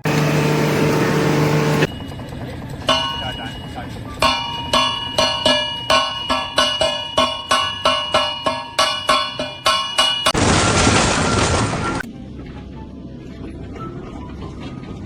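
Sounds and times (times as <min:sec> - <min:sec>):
loud burst of noise: 0:00.0 - 0:01.9, 0:10.4 - 0:12.0
ringing metallic strikes: 0:00.6 - 0:10.4.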